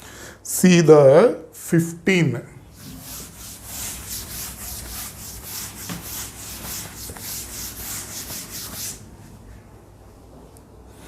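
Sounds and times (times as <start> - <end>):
rubbing on writing surface: 2.7 - 9.0.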